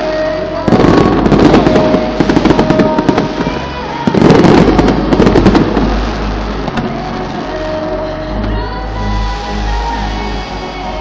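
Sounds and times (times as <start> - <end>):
music: 0.0 - 11.0
fireworks crackling bangs: 0.6 - 8.6.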